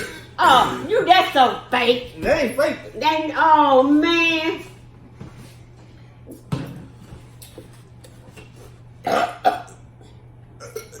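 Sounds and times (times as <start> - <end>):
person burping: 9.0 - 9.8, 10.6 - 11.0.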